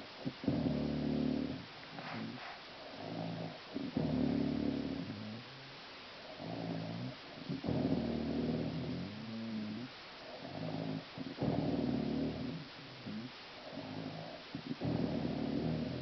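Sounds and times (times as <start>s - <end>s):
soft breathing: 1.5s - 7.6s
woman snoring: 3.0s - 5.4s, 6.3s - 16.0s.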